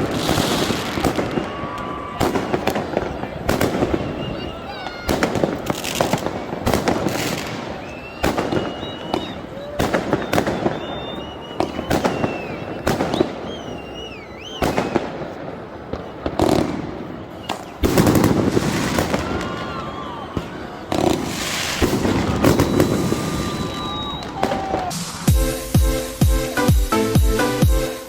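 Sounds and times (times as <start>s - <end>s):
fireworks bangs: 0.0s - 26.6s
fireworks crackling: 0.0s - 28.0s
high wavering whistles: 7.6s - 15.0s, 22.3s - 28.0s
dance music: 24.8s - 28.0s.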